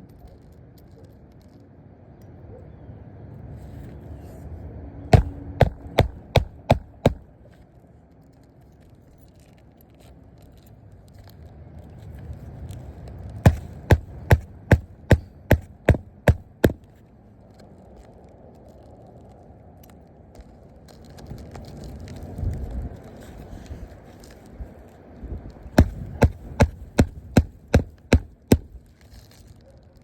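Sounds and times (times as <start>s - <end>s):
hammer blows: 5.2s - 7.2s, 13.5s - 16.8s, 25.8s - 28.8s.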